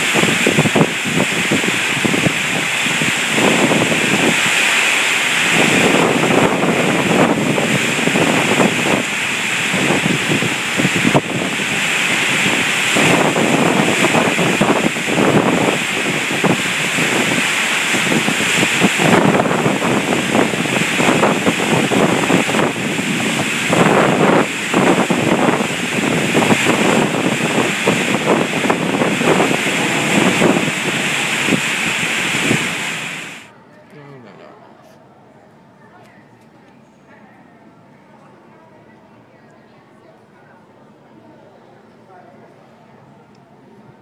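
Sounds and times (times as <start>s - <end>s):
heavy rain downpour: 0.0s - 33.5s.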